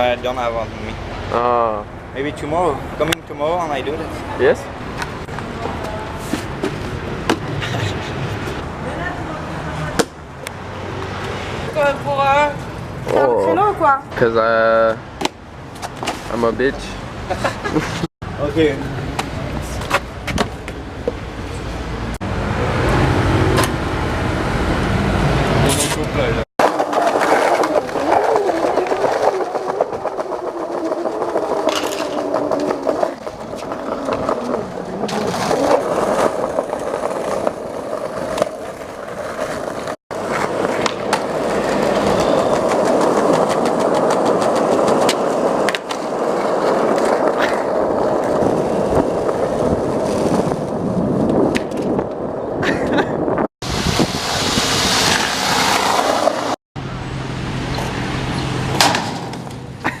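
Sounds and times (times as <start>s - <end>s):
skateboard wheels on rough pavement: 3.3s - 14.0s, 15.2s - 56.6s, 57.5s - 60.0s
skateboard clacks: 25.9s - 49.6s, 58.8s - 60.0s.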